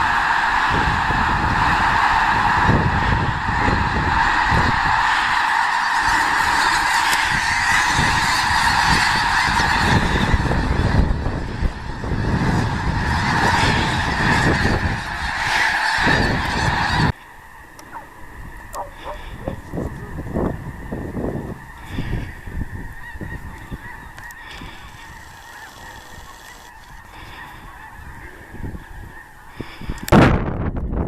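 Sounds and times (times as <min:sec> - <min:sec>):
geese honking: 0:00.0 - 0:30.1
wind buffeting microphone: 0:00.0 - 0:31.0.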